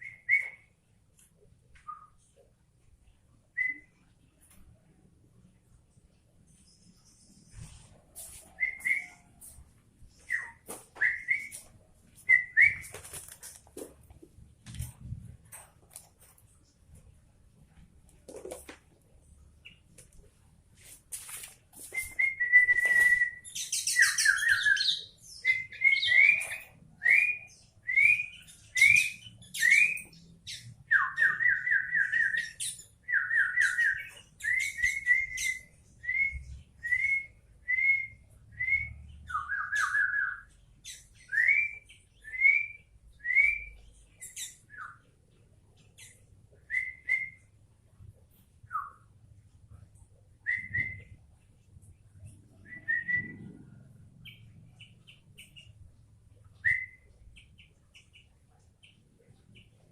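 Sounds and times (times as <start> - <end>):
bird singing whistles: 0.0 - 0.7, 1.8 - 2.2, 8.5 - 9.3, 10.2 - 13.0, 21.9 - 45.0, 46.7 - 47.5, 50.4 - 51.2, 52.7 - 53.6, 56.6 - 57.1.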